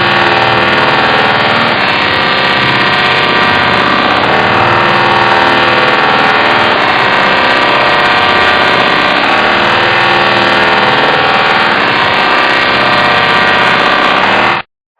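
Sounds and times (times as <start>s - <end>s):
robotic vocoder voice tone: 0.0s - 11.6s.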